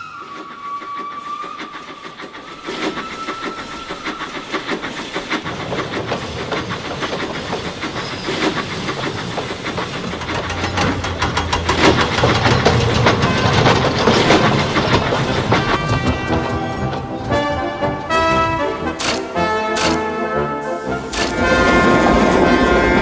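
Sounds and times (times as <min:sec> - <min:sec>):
steam locomotive whistle: 0:00.0 - 0:04.4, 0:14.9 - 0:23.0
steam chuffs and hiss: 0:00.0 - 0:23.0.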